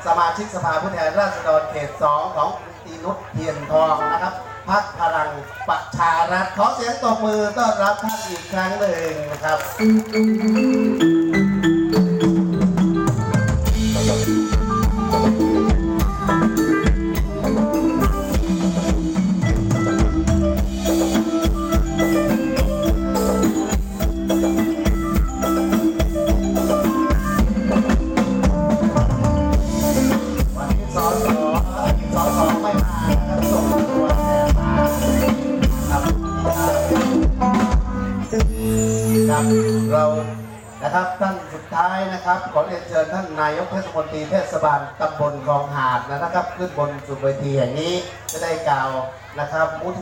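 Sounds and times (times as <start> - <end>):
drum kit beat: 9.6 - 39.2
sustained keyboard notes: 9.7 - 41.6.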